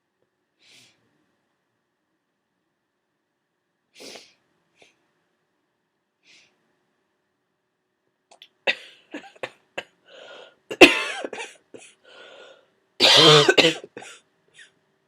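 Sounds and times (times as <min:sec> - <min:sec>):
person sneezing: 0:13.0 - 0:14.2.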